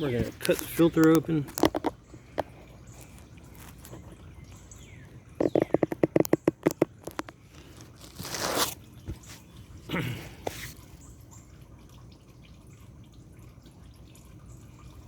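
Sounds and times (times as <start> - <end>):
oil filter scraping and tearing: 0.0 - 4.4, 5.4 - 9.5, 10.4 - 10.9.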